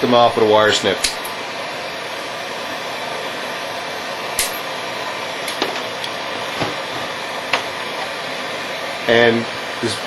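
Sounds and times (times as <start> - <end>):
steady hiss: 0.0 - 10.0.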